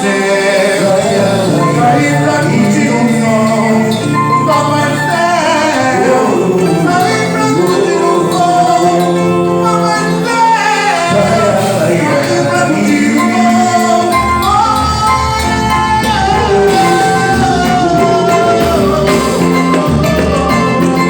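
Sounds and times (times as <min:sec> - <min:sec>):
song with sung vocals: 0:00.0 - 0:21.0.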